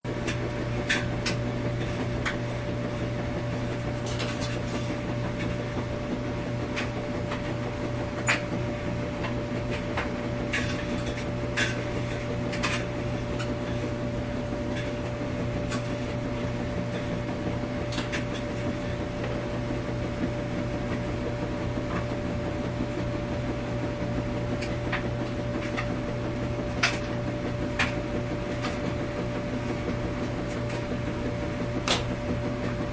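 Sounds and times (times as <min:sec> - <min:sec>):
laundry machine humming: 0:00.0 - 0:32.9.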